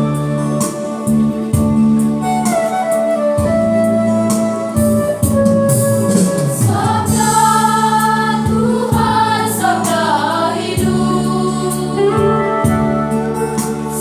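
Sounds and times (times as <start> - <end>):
electronic keyboard: 0.0 - 14.0
choir singing a hymn: 6.4 - 14.0.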